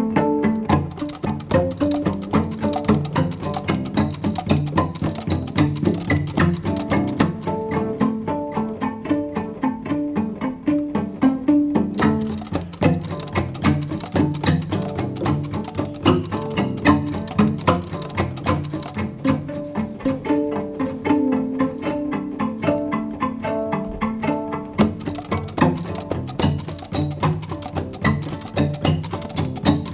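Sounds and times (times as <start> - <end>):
instrumental string music with beat: 0.0 - 29.9.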